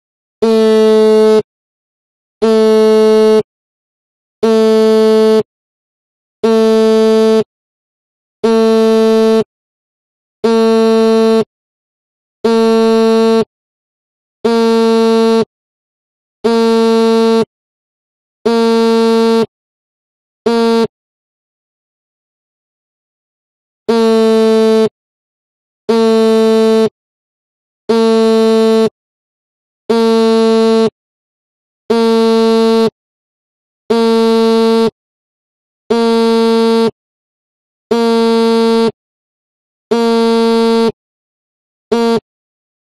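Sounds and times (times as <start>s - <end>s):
phone vibrating on a table: 0.4s - 1.5s, 2.4s - 3.5s, 4.4s - 5.5s, 6.4s - 7.5s, 8.4s - 9.5s, 10.4s - 11.5s, 12.4s - 13.5s, 14.4s - 15.5s, 16.4s - 17.5s, 18.4s - 19.5s, 20.4s - 21.0s, 23.9s - 25.0s, 25.8s - 27.0s, 27.8s - 29.0s, 29.8s - 31.0s, 31.8s - 33.0s, 33.8s - 35.0s, 35.8s - 37.0s, 37.8s - 39.0s, 39.8s - 41.0s, 41.8s - 42.3s.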